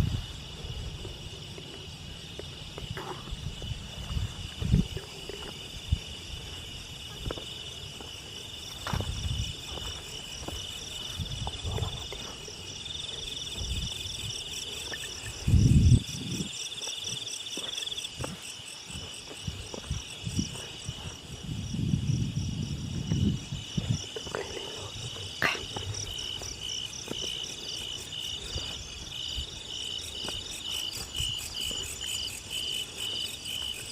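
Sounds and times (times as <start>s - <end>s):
crickets chirring: 0.0s - 33.9s
low thumps and rumbles: 15.3s - 16.5s.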